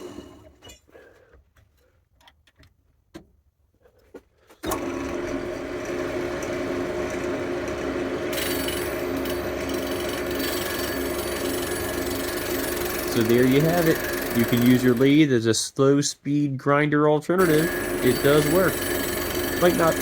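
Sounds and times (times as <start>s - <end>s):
lathe motor humming: 4.6s - 15.1s, 17.4s - 20.0s.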